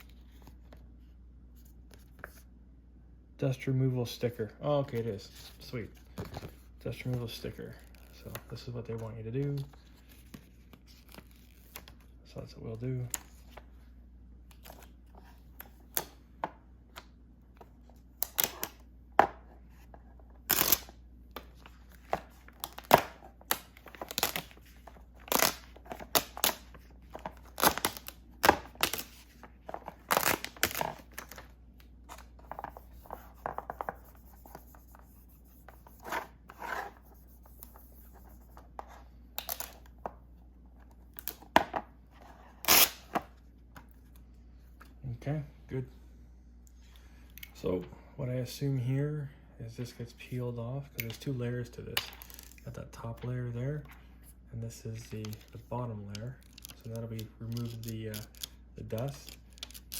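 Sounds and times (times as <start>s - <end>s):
plastic film crinkling and tearing: 22.6s - 24.6s, 25.2s - 26.6s, 27.4s - 29.2s, 30.0s - 31.4s.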